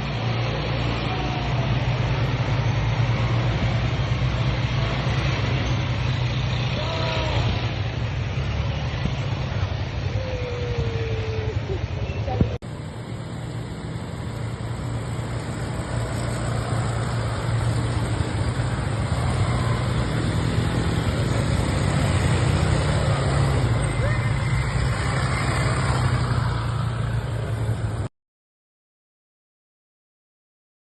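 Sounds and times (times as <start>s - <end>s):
atv engine running: 11.9s - 28.1s.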